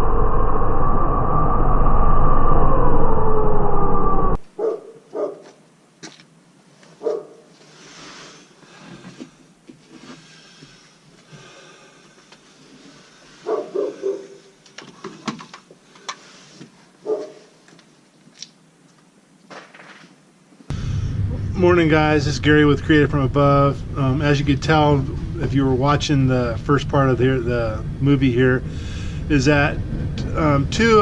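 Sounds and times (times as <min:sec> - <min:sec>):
dog barking: 0:04.5 - 0:05.5, 0:07.0 - 0:07.5, 0:13.4 - 0:14.4, 0:17.0 - 0:17.5
faint hiss: 0:07.6 - 0:13.7.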